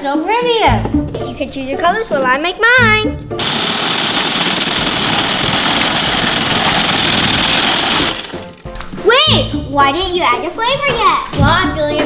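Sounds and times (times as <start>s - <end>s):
snow cone machine grinding ice: 3.4s - 8.6s.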